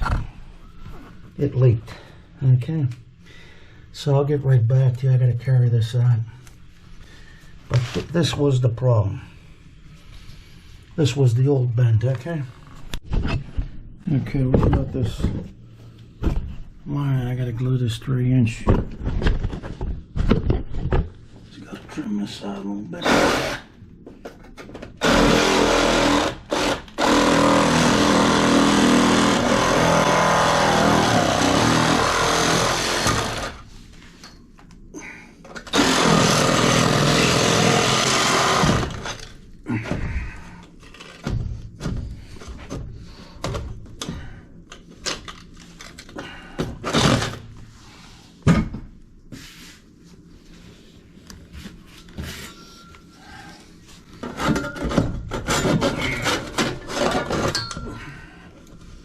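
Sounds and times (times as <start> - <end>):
power saw cutting: 23.0 - 23.7, 25.0 - 33.6, 35.7 - 39.0
tools and pipe clattering: 54.2 - 58.9.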